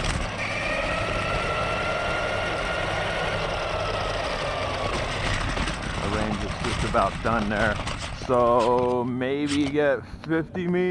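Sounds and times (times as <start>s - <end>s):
electric motor whining: 0.0s - 8.4s
low rumble: 0.0s - 9.5s.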